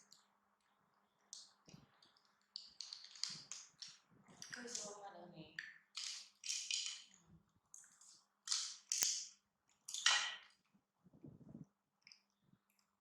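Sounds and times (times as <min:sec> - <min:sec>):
plastic snack bag crinkling: 0:01.3 - 0:04.9
packaging snapping: 0:02.6 - 0:04.9.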